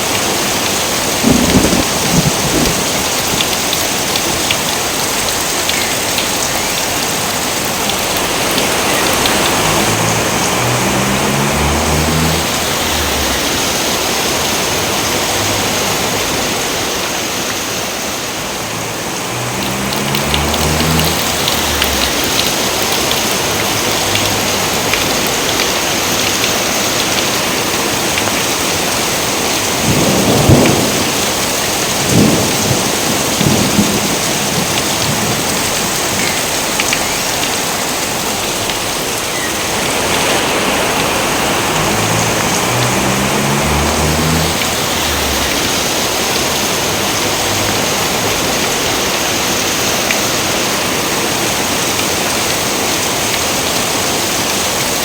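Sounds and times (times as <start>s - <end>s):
heavy rain: 0.0s - 55.0s
thunder cracks and rumbles: 0.9s - 4.8s, 29.6s - 36.0s, 39.9s - 48.6s.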